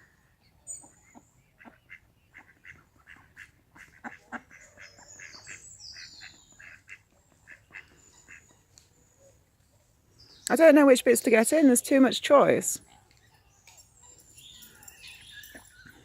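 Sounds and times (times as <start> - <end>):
ducks quacking: 0.8 - 8.7.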